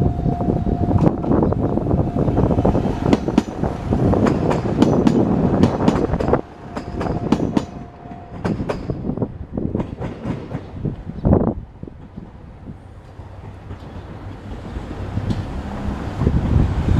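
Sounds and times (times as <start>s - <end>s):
heavy train rumble: 0.0s - 16.9s
train wheels clacking over rail joints: 3.0s - 11.1s, 13.1s - 16.3s.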